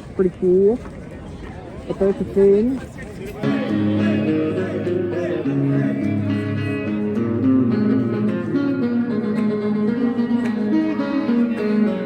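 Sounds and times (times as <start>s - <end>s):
bass line: 3.4s - 11.9s
plucked guitar music: 3.4s - 12.0s.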